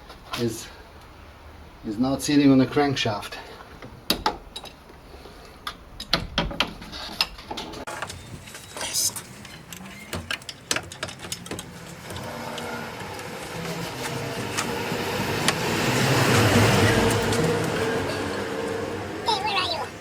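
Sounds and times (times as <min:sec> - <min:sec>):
tool clicks and knocks: 0:07.9 - 0:15.7
rushing noise: 0:12.3 - 0:20.0.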